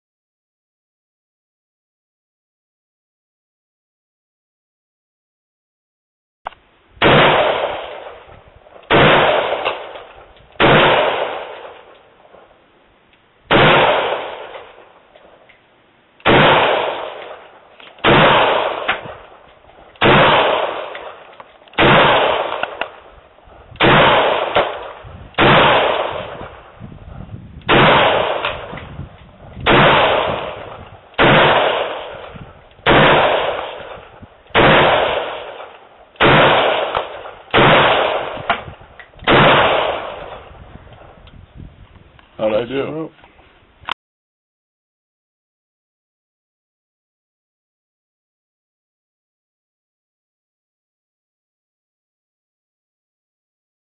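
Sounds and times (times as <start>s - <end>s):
rifle shots echoing: 7.0s - 12.6s, 13.5s - 15.5s, 16.2s - 26.8s, 27.6s - 41.2s.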